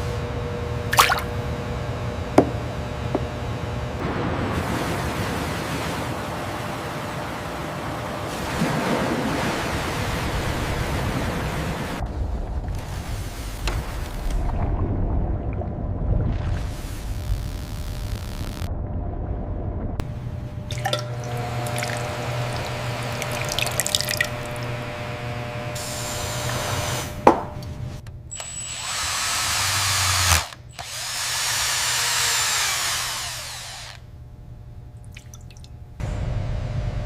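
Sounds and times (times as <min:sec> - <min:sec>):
handheld power drill: 0:28.3 - 0:34.0.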